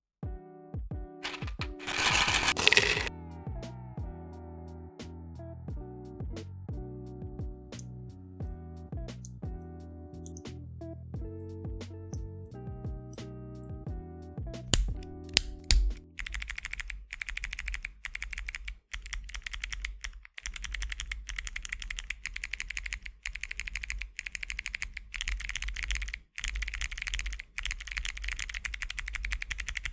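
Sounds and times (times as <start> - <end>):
music: 0.2 - 1.9, 3.0 - 16.2
clicky mechanical keyboard typing: 1.2 - 3.1, 14.7 - 29.9.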